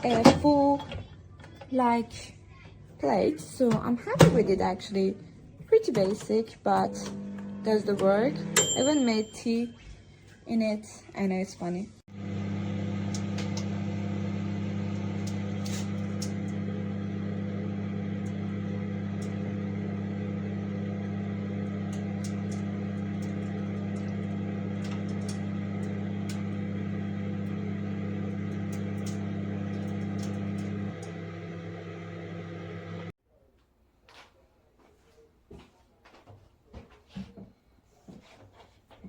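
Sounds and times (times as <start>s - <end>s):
microwave oven humming: 6.8s - 9.3s, 12.1s - 33.2s.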